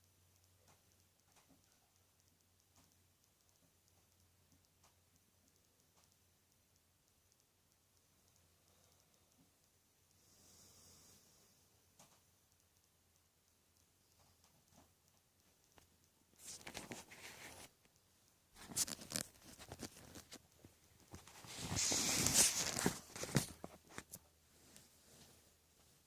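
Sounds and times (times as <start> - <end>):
rustling handling noise: 18.6 - 26.0.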